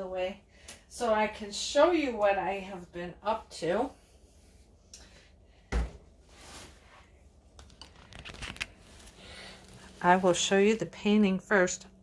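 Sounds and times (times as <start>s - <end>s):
thump on work table: 5.7s - 6.0s.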